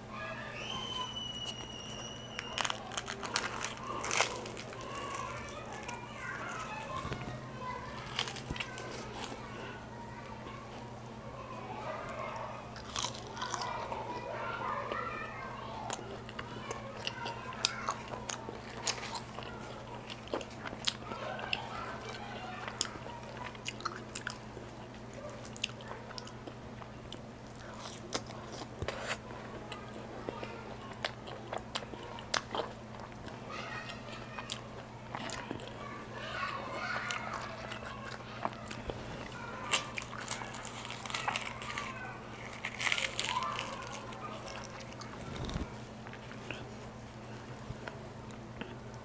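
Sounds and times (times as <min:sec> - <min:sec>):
biting and chewing: 0:01.3 - 0:11.0, 0:11.8 - 0:49.0
wet mouth sounds: 0:44.9 - 0:46.9.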